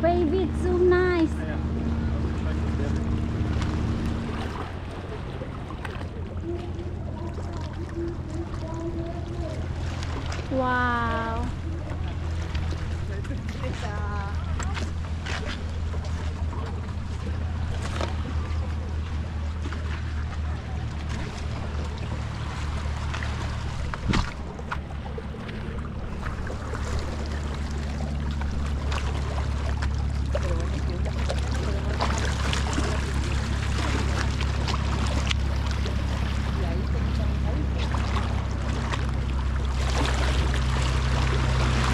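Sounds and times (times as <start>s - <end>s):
boat engine droning: 0.0s - 41.9s.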